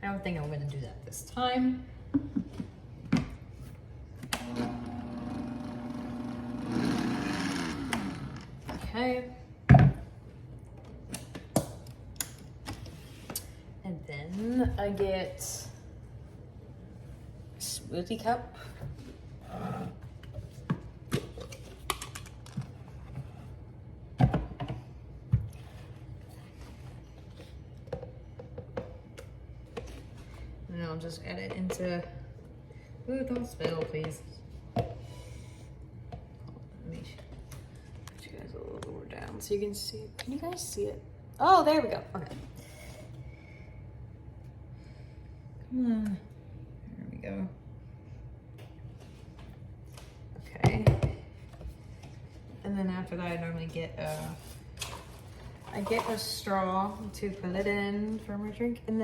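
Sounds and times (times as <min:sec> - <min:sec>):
blender motor humming: 0:04.4 - 0:08.6.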